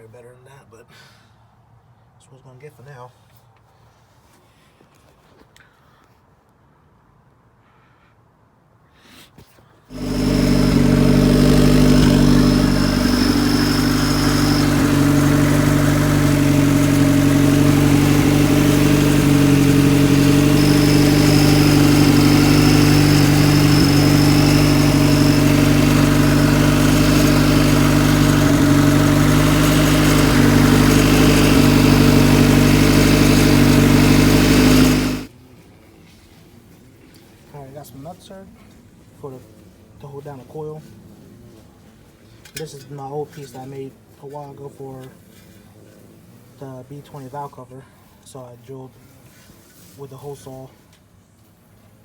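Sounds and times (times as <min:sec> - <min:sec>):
machine droning steadily: 0:09.9 - 0:35.3.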